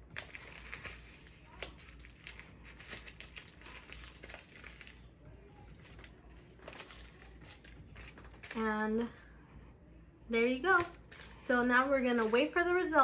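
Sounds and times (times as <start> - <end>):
packaging crinkling: 0.0 - 5.1, 5.7 - 8.7.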